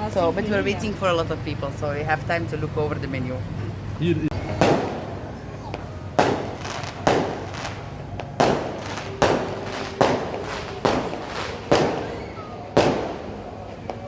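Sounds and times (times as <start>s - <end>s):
fireworks bangs with echo: 4.4s - 14.0s.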